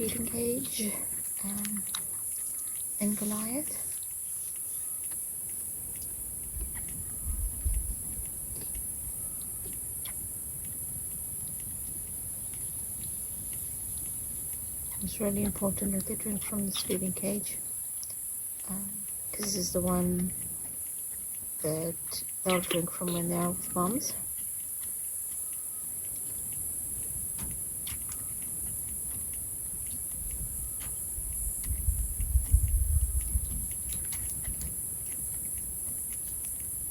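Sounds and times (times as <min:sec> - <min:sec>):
faint ticks: 0:00.0 - 0:36.9
insects chirring: 0:00.0 - 0:36.9
low rumbling bumps: 0:28.6 - 0:36.9.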